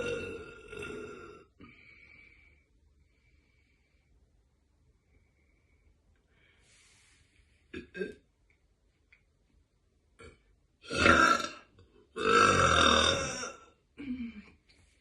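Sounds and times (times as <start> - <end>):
woman burping: 0.0 - 1.6, 7.8 - 8.2, 10.2 - 14.5.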